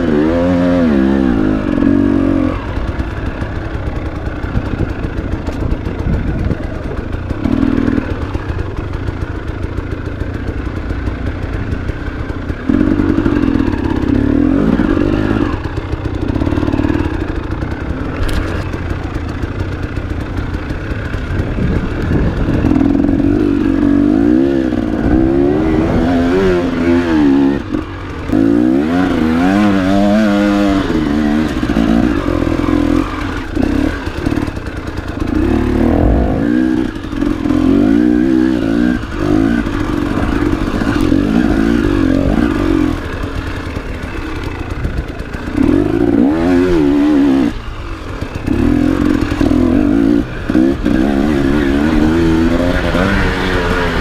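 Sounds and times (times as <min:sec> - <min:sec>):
motorcycle engine revving: 0:00.0 - 0:54.0
motorcycle clattering: 0:01.7 - 0:28.6, 0:38.9 - 0:52.0.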